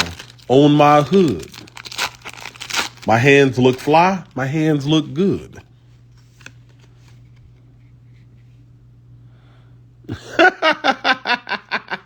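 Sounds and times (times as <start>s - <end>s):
person bursting into laughter: 10.1s - 12.0s.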